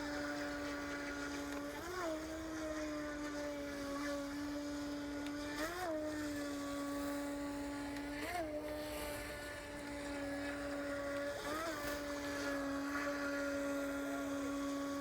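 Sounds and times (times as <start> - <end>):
model boat electric motor whine: 0.0 - 15.0.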